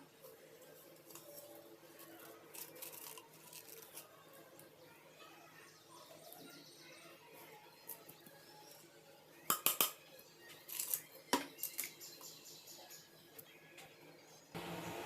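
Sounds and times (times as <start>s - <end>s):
kitchenware clinking and knocking: 9.5s - 10.0s.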